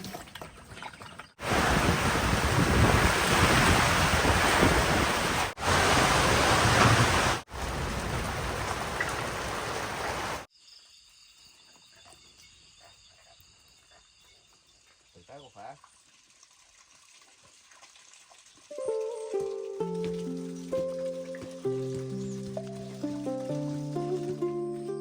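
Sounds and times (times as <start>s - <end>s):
heavy rain pouring: 1.4s - 10.5s, 18.7s - 24.8s.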